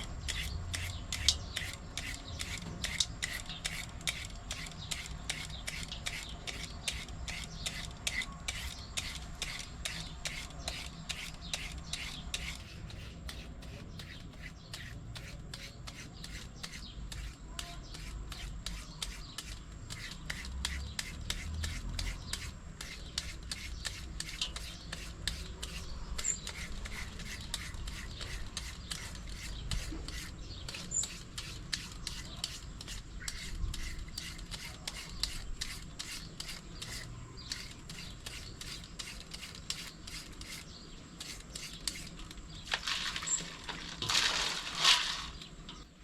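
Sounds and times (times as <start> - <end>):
papaya shredding scrapes: 0.0 - 45.6
rushing rustling noise: 42.7 - 45.6.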